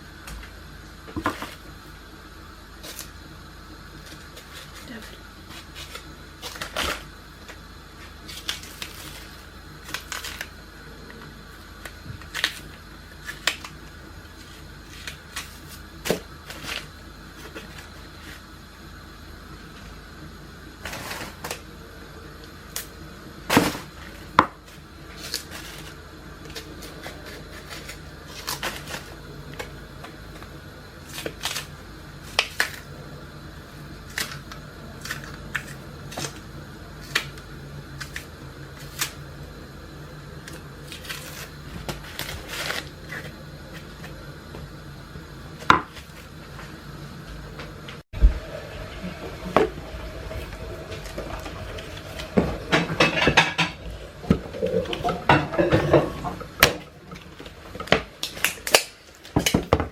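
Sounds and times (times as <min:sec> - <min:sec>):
utensils and dishes clattering: 0:49.0 - 0:56.8.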